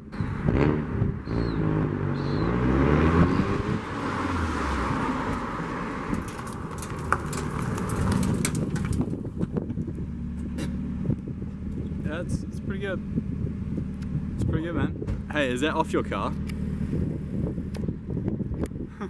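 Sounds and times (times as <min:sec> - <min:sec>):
car engine accelerating: 0:00.0 - 0:14.5
road noise: 0:00.0 - 0:19.0.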